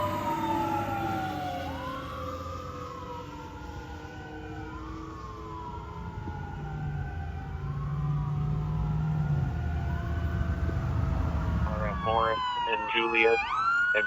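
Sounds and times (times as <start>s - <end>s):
fire engine sirens wailing: 0.0s - 14.0s
truck engine rumble: 5.6s - 13.9s.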